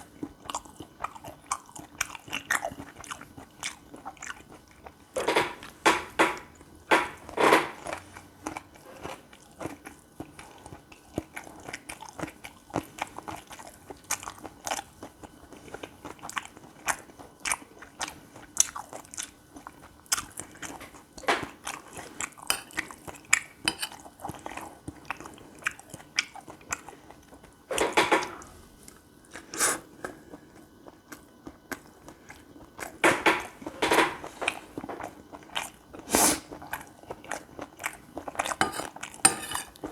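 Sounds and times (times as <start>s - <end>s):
chewing and biting: 0.2s - 5.0s, 34.5s - 39.9s.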